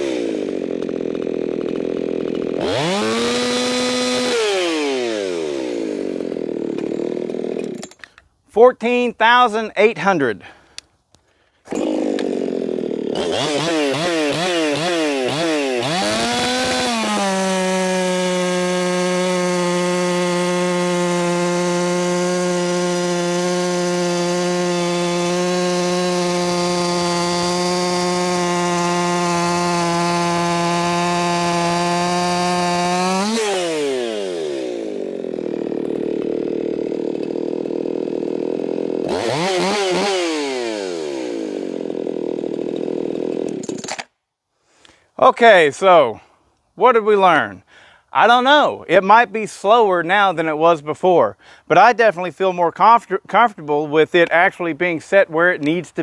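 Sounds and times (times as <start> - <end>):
chainsaw revving: 0.0 - 8.2, 11.5 - 44.1.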